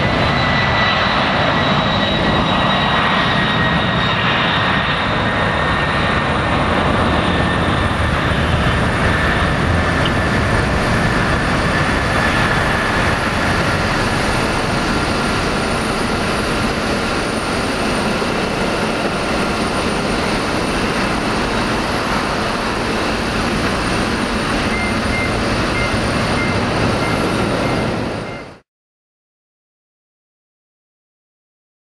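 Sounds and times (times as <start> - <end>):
jet engines roaring: 0.0 - 28.6.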